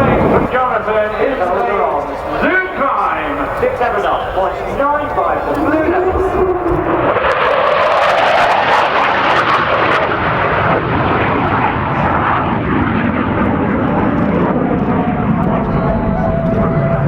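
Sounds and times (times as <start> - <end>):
jet roaring past: 0.0 - 17.0.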